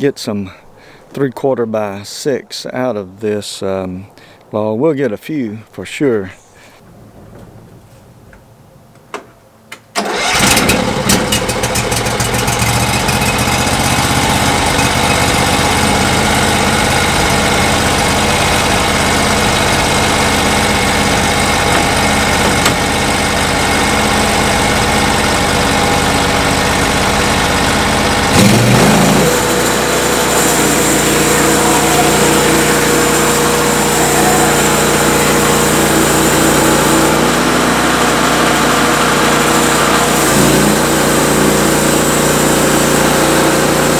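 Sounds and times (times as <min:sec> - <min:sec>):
sawmill engine starting and running: 0:10.0 - 0:43.9.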